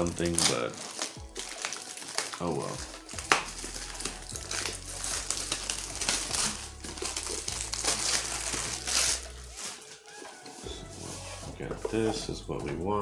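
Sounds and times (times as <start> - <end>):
plastic wrap tearing and crinkling: 0.0 - 12.1.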